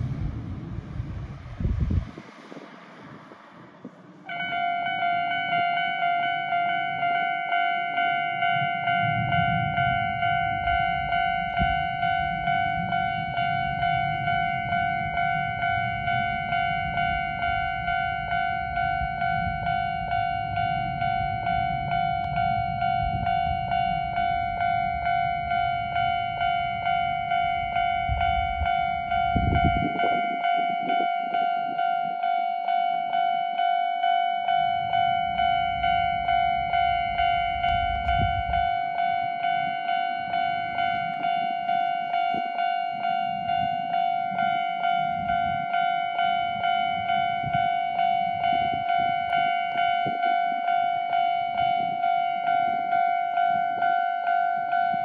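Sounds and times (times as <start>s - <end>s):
low rumble: 0.0s - 7.1s, 8.0s - 31.2s, 34.5s - 44.0s
level-crossing warning bell: 0.0s - 55.0s.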